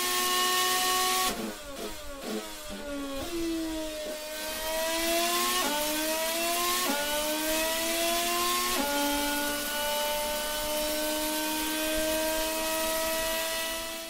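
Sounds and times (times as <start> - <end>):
racing engine accelerating through gears: 0.0 - 14.0.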